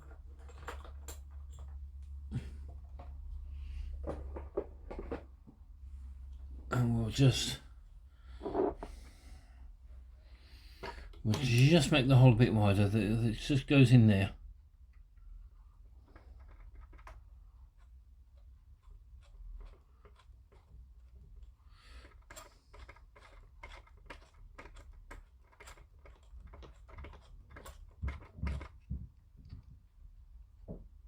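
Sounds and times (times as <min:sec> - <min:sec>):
hand drill clicking and scraping: 0:17.8 - 0:28.8.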